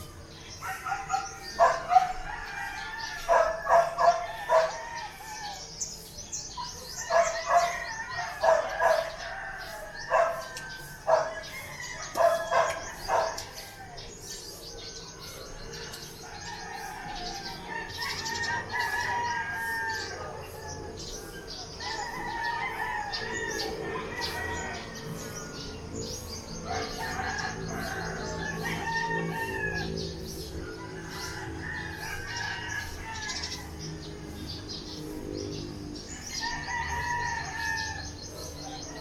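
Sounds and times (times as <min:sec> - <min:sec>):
roosters crowing: 0:00.0 - 0:39.0
small birds chirping: 0:00.0 - 0:39.0
dog barking: 0:00.6 - 0:02.2, 0:03.3 - 0:04.7, 0:08.4 - 0:09.1, 0:10.1 - 0:10.5, 0:11.1 - 0:11.3, 0:12.2 - 0:13.5.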